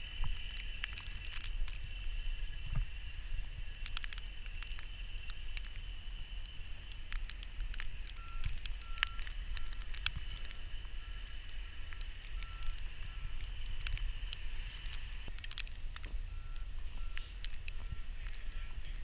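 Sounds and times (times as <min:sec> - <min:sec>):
faint high whine: 0:00.0 - 0:19.0
low rumble: 0:00.0 - 0:19.0
sharp clicks: 0:03.7 - 0:10.6, 0:11.4 - 0:19.0
vehicle backup alarm beeping: 0:08.0 - 0:14.6, 0:16.0 - 0:19.0.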